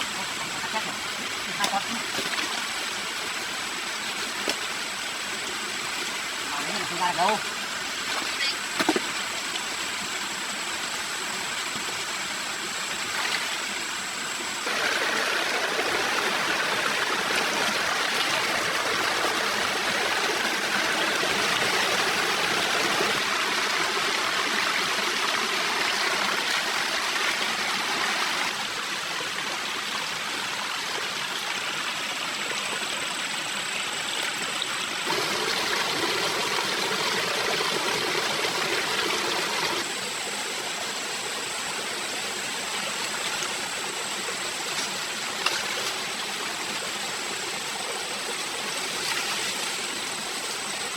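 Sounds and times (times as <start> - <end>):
forest stream rushing: 0.0 - 50.9.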